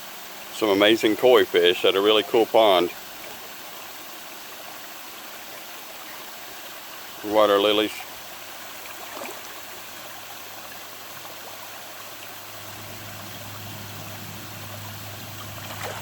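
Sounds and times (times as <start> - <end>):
water running and trickling: 0.0 - 16.0
low steady hum: 8.0 - 16.0.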